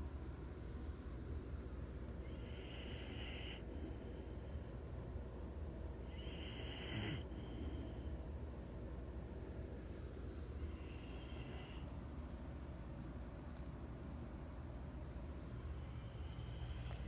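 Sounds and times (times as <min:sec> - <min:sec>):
low steady hum: 0:00.0 - 0:17.0
puppies snoring: 0:02.2 - 0:04.2, 0:06.0 - 0:08.1, 0:10.6 - 0:12.1, 0:15.6 - 0:17.0.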